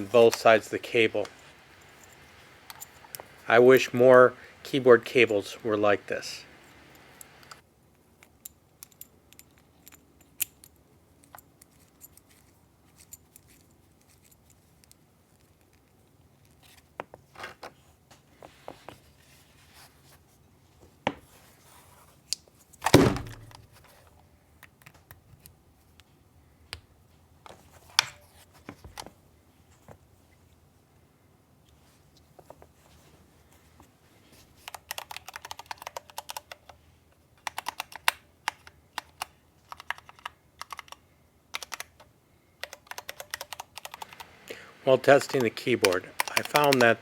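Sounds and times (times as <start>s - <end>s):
keyboard parts clicking and rattling: 0.0s - 4.0s, 34.6s - 36.8s, 37.4s - 47.0s.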